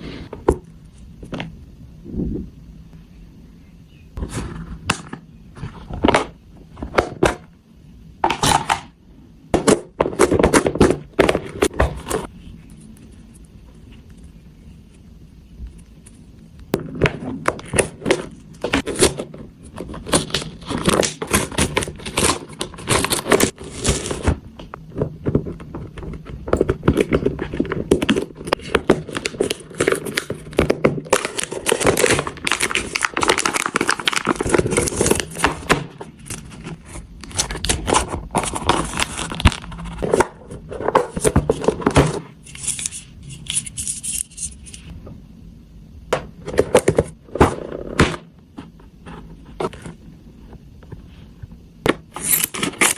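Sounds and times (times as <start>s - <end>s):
packaging torn and crinkled: 19.8s - 24.3s, 28.0s - 40.1s.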